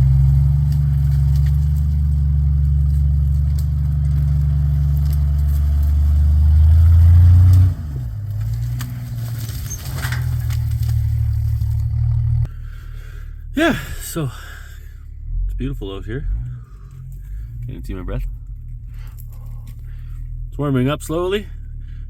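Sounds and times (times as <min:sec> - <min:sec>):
knocks and clatter over rocks: 0:00.0 - 0:12.3
off-road vehicle engine droning: 0:00.0 - 0:22.0.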